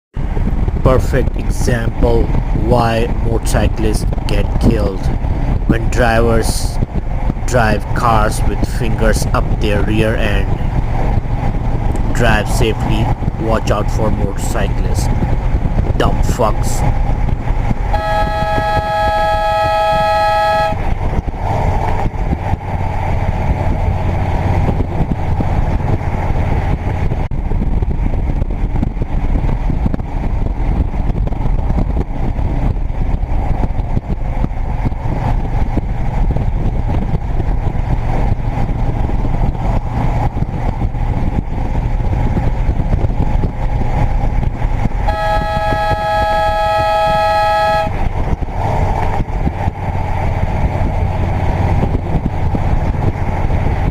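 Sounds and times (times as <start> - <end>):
vehicle and road noise: 0.2 - 53.9
air horn blaring: 17.9 - 20.9, 45.1 - 48.0.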